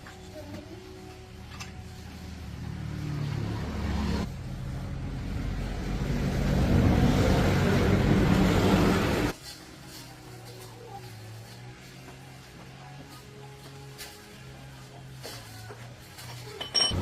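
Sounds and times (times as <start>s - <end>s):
vehicle engine running: 1.8s - 9.4s.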